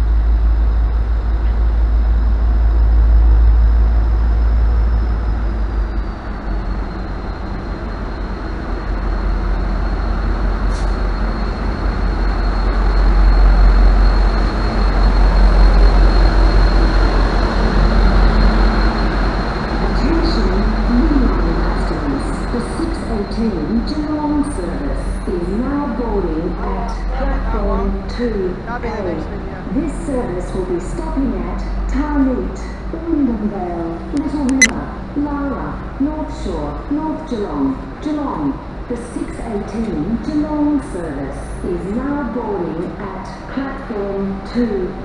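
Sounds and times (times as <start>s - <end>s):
high whine: 0.0s - 31.8s
diesel train engine rumble: 0.0s - 45.0s.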